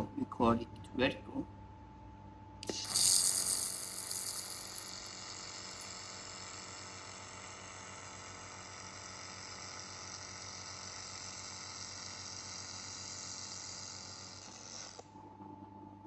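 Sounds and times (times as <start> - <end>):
laser welder hissing: 2.6 - 15.0.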